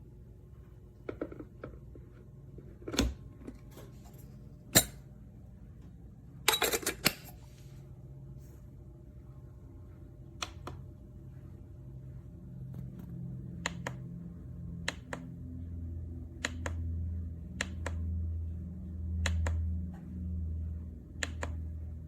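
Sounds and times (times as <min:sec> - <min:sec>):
low steady hum: 0:00.0 - 0:22.0.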